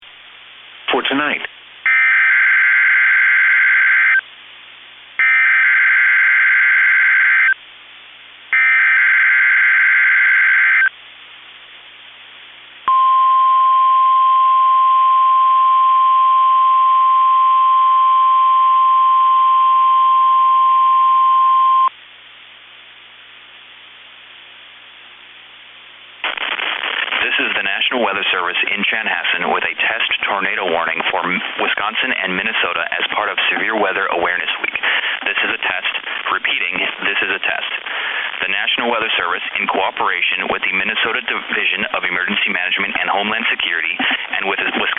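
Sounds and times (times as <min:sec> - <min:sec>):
faint radio hiss: 0:00.0 - 0:01.9, 0:07.5 - 0:08.6, 0:10.8 - 0:12.9, 0:21.9 - 0:44.9
steady single-pitch alarm tone: 0:01.9 - 0:04.2, 0:05.2 - 0:07.6, 0:08.6 - 0:10.9, 0:12.9 - 0:21.9.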